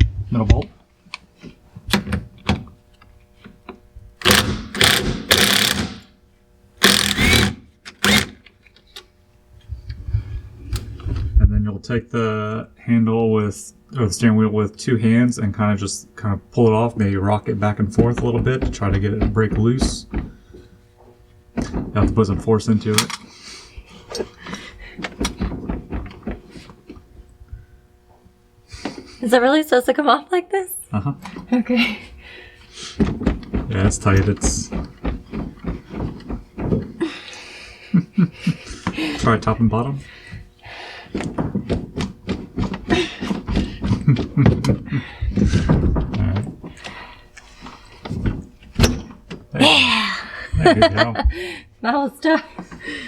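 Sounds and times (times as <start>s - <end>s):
socket ratchet clicking: 4.2s - 6.0s, 6.8s - 8.5s
steering wheel knocking and clunking: 17.9s - 20.6s, 21.5s - 22.6s, 25.0s - 26.5s, 33.0s - 37.0s.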